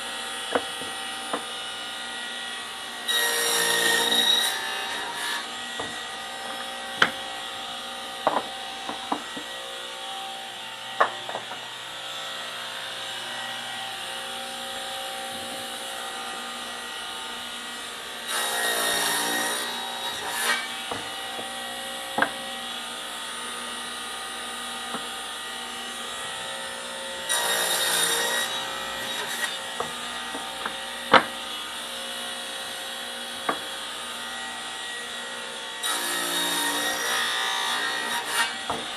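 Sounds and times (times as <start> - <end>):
saw cutting wood: 0.0 - 38.9
table saw running: 0.0 - 38.9
sharp knocks: 5.8 - 7.2, 8.3 - 9.5.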